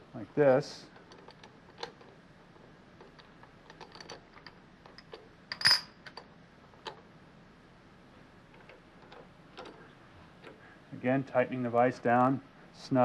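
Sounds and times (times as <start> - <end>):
steel parts clinking in vise: 3.7 - 6.2.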